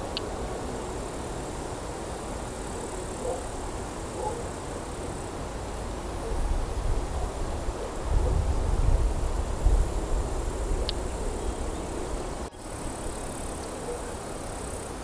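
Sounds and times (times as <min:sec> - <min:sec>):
faint chirp-like sounds: 0:00.0 - 0:15.0
outdoor background hiss: 0:00.0 - 0:15.0
wind rumbling on microphone: 0:06.2 - 0:14.0.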